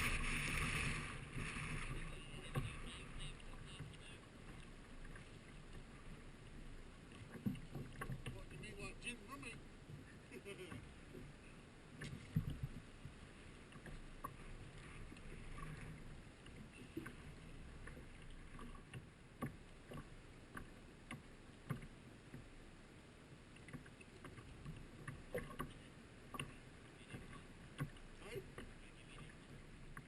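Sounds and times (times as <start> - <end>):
water wash: 0.0 - 11.3
wind: 0.0 - 30.0.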